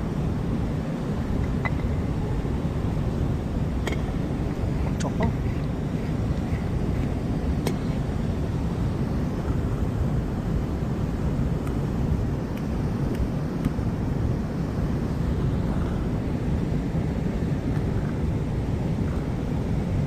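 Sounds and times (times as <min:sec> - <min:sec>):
waterfall roaring: 0:00.5 - 0:14.1.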